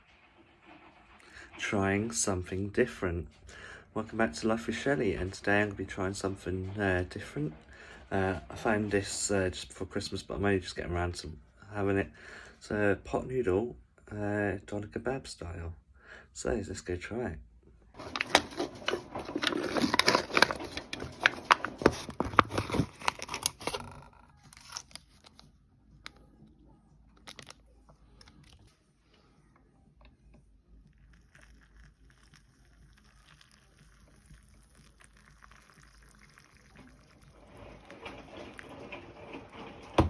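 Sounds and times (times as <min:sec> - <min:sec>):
packaging crinkling and tearing: 0:18.0 - 0:25.5, 0:27.2 - 0:27.6, 0:31.2 - 0:37.2.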